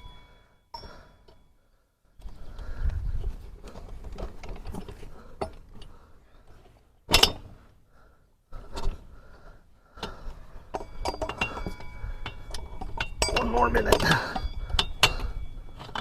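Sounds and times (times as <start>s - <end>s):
metal clanks and knocks: 7.1s - 7.6s, 10.0s - 16.0s.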